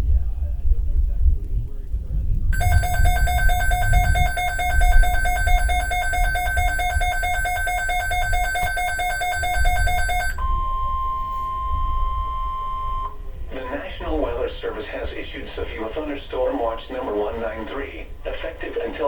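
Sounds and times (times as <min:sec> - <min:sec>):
steady alert tone: 0:02.6 - 0:10.4
alert alarm beeping: 0:02.6 - 0:11.0.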